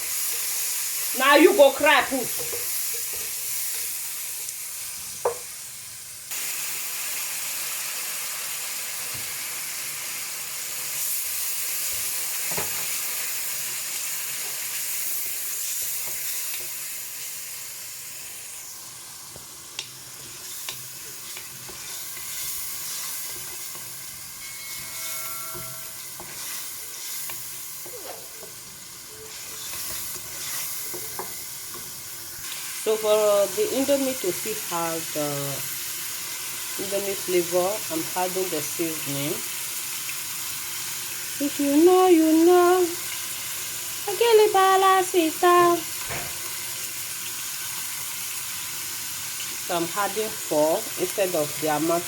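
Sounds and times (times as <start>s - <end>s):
food sizzling in hot oil: 0.0s - 52.0s.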